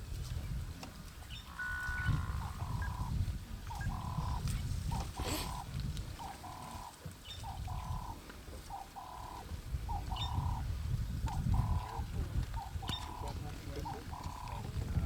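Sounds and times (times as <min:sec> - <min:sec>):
bird two-note call: 0:01.5 - 0:03.1.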